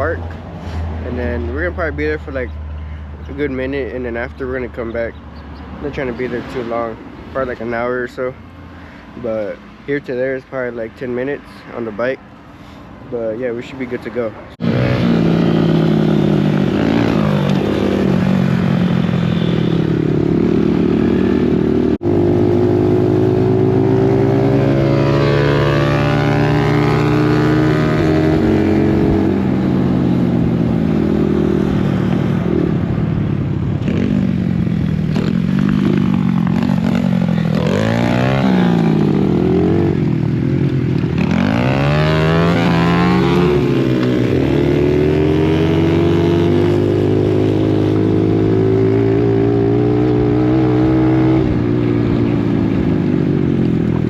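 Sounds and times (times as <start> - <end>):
dirt bike engine revving: 14.6 - 32.8, 33.8 - 52.6.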